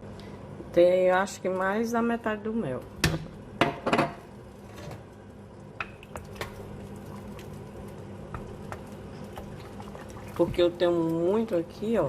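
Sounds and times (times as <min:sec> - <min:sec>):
syrup simmering with pops: 0:05.1 - 0:11.9.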